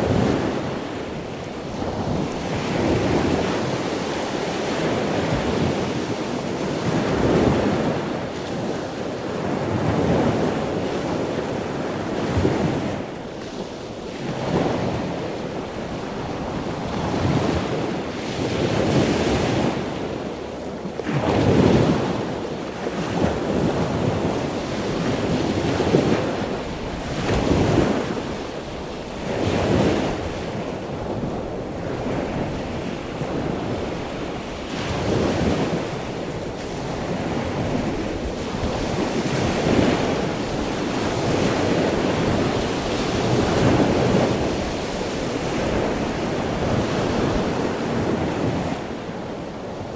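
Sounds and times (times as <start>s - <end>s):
wind rumble on microphone: 0.0s - 49.9s
ocean waves breaking: 21.0s - 49.9s.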